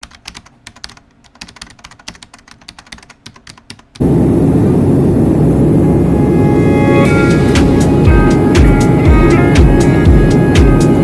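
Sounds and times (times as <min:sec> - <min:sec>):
computer keyboard typing: 0:00.0 - 0:04.0
loud steady low noise: 0:04.0 - 0:11.0.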